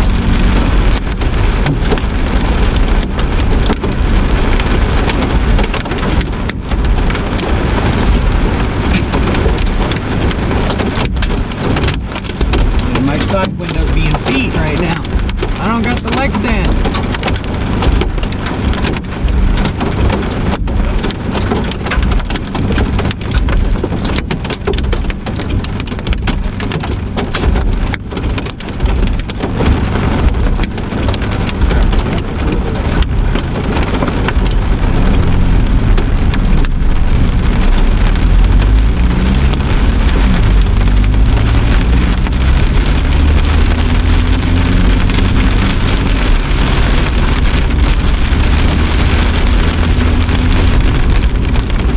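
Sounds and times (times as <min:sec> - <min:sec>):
heavy rain beating down: 0:00.0 - 0:51.9
low rumble: 0:00.0 - 0:51.9.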